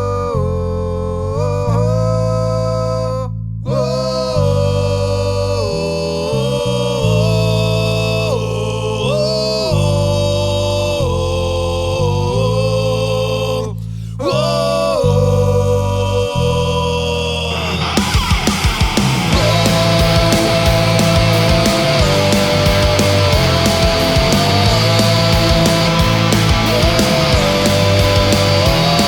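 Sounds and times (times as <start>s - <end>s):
long held bass notes: 0.0s - 29.0s
rock song lead melody: 17.7s - 29.0s.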